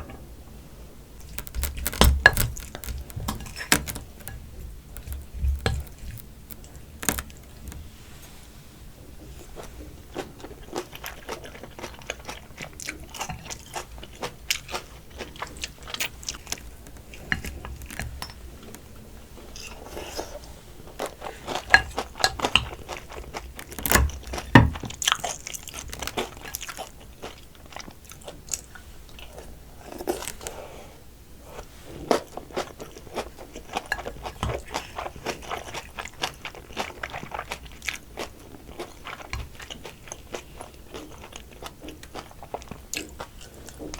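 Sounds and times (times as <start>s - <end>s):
crab shells crunching: 1.2s - 7.9s, 10.1s - 20.3s, 21.0s - 30.6s.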